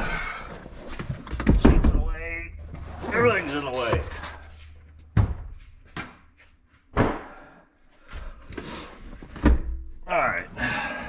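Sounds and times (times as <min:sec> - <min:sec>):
knocks and thumps: 0:01.0 - 0:04.4, 0:05.0 - 0:06.3.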